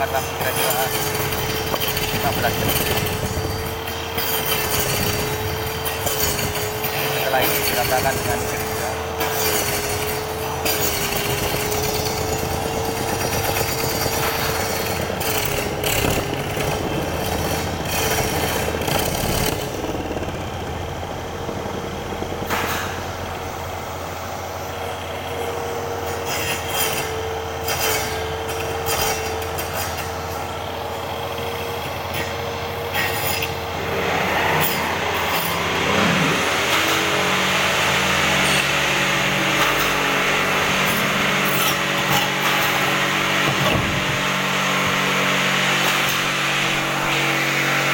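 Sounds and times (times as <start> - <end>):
circular saw whining: 0.0 - 47.9
wood scraping and knocking on blade: 10.6 - 23.5.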